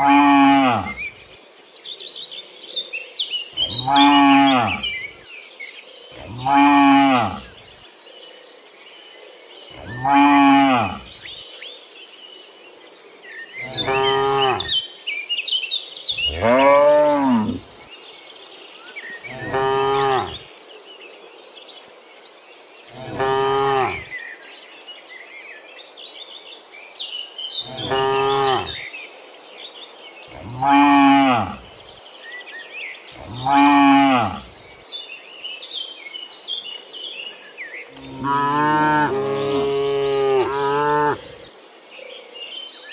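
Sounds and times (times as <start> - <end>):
faint high insect drone: 0.0 - 42.9
cattle mooing: 16.3 - 17.6, 38.0 - 41.3.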